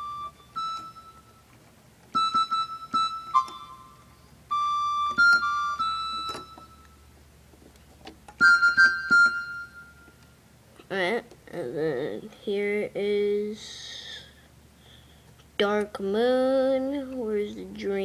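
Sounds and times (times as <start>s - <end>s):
electronic keyboard recorder notes: 0.0s - 1.5s, 2.1s - 7.1s, 8.4s - 10.2s.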